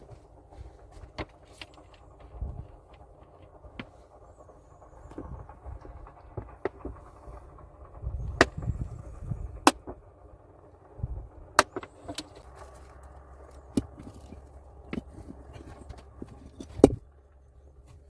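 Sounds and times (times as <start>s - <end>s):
low scraping rumble: 0.0s - 18.0s
stones clacking together: 0.1s - 4.0s, 11.6s - 17.1s.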